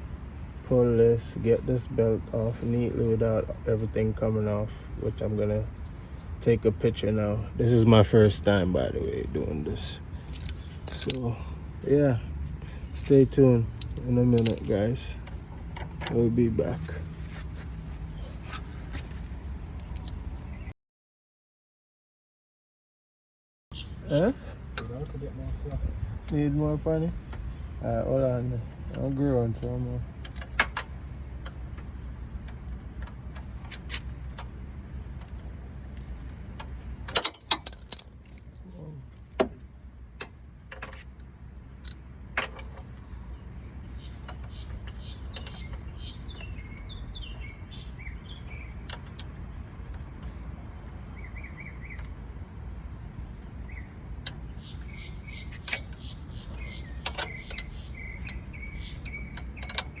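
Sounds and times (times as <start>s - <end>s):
metallic clicks of hand tools: 13.8s - 14.7s, 37.1s - 38.4s, 55.5s - 60.0s
birds chirping: 19.8s - 20.7s, 23.7s - 32.6s, 41.0s - 60.0s.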